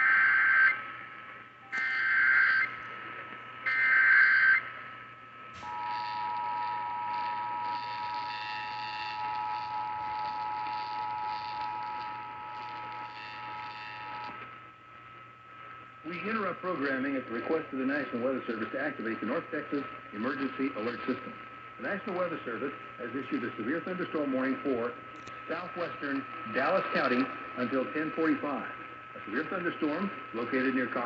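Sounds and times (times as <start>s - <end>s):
screeching data bursts: 1.7s - 2.7s, 3.6s - 4.7s.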